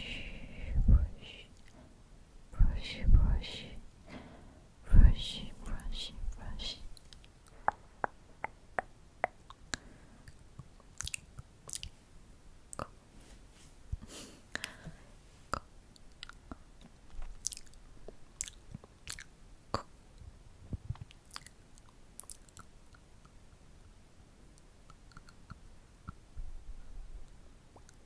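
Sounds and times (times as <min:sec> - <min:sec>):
lip smacks: 0:07.0 - 0:12.0, 0:17.4 - 0:19.9, 0:21.0 - 0:23.4, 0:24.9 - 0:26.2
wet mouth clicks: 0:07.0 - 0:12.0, 0:15.5 - 0:16.6, 0:17.4 - 0:19.9, 0:21.0 - 0:23.4, 0:24.9 - 0:26.2.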